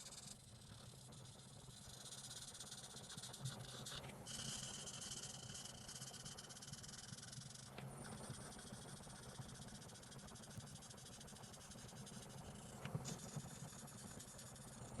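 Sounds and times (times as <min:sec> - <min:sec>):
coloring strokes on paper: 0:00.3 - 0:15.0.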